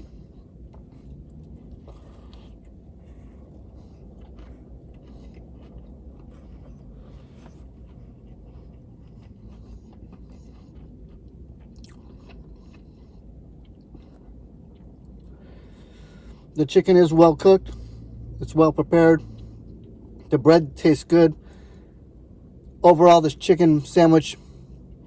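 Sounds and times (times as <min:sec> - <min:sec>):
person chewing crunchy food: 0:00.0 - 0:16.6
steady low hum: 0:00.0 - 0:25.0.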